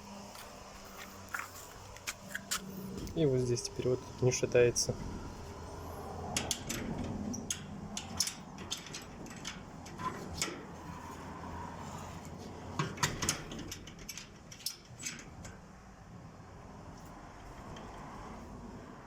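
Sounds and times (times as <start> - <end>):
gate clicks and knocks: 12.8 - 15.4.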